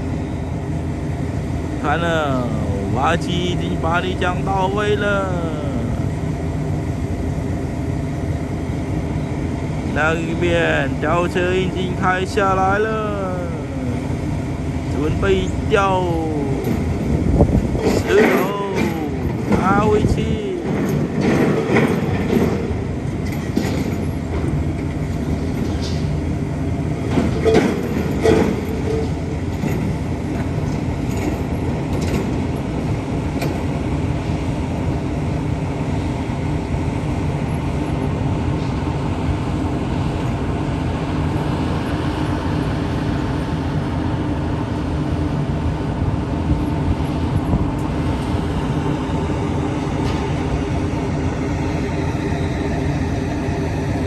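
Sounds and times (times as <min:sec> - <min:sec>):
heavy diesel machinery running: 0:00.0 - 0:54.0
metallic knocks and clanks: 0:20.6 - 0:24.6, 0:27.1 - 0:32.4.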